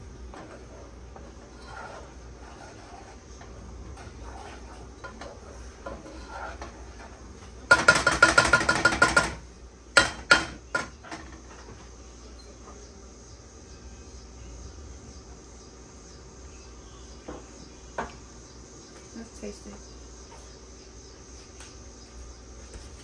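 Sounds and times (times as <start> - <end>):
spoon stirring and scraping a pot: 0.0 - 11.9.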